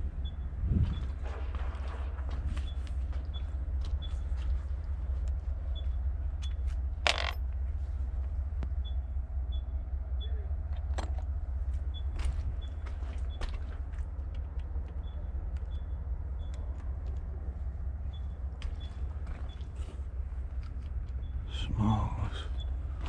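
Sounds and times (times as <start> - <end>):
steady low hum: 0.0 - 23.0
scrap metal knocks and clinks: 7.1 - 7.4.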